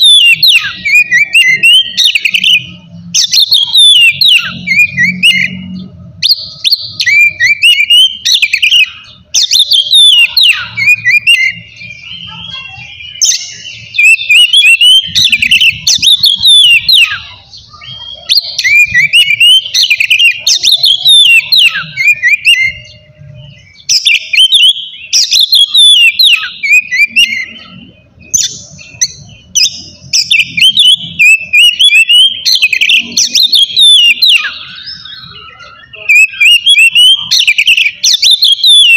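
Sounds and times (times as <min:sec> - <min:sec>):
bird singing whistles: 0:00.0 - 0:38.9.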